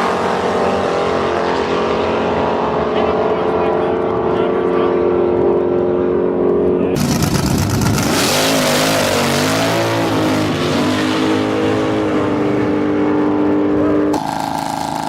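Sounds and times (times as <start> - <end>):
another car engine: 0.0 - 15.0
car engine revving high: 0.0 - 15.0.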